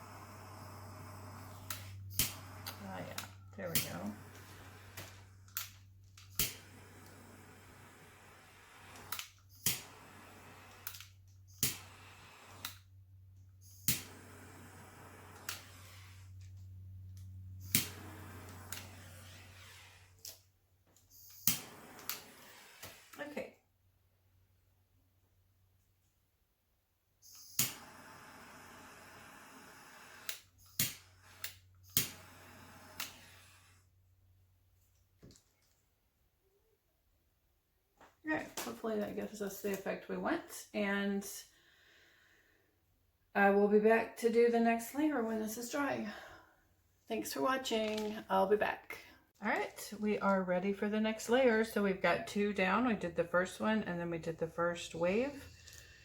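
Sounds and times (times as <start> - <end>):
torch flame hissing: 0.0 - 12.9, 13.8 - 16.4, 17.5 - 20.4, 21.3 - 23.4, 27.6 - 33.9
torch trigger click: 0.4 - 12.9, 13.7 - 16.3, 17.2 - 20.4, 21.2 - 23.3, 27.4 - 33.6.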